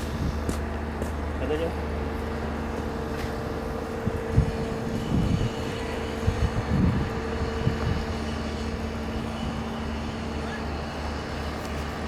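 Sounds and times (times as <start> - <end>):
diesel truck engine idling: 0.0 - 12.0.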